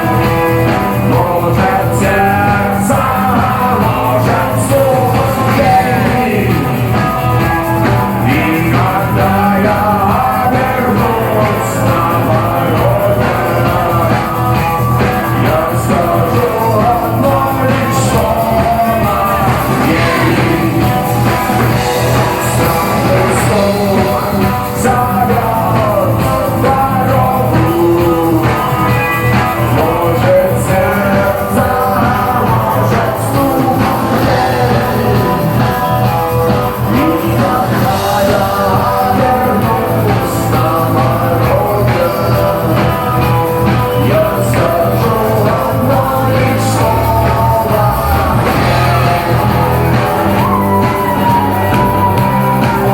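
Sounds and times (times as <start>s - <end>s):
person singing: 0.0s - 52.9s
rock band playing: 0.0s - 52.9s.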